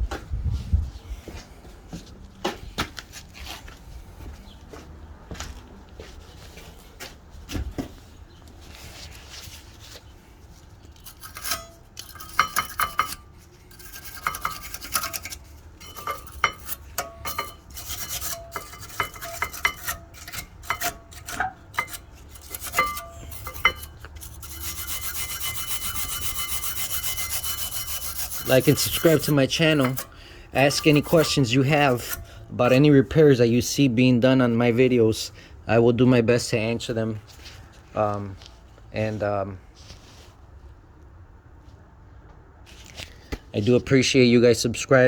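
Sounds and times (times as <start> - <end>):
metal tools clanking: 11.0 - 32.8
fast rasping: 13.7 - 32.3.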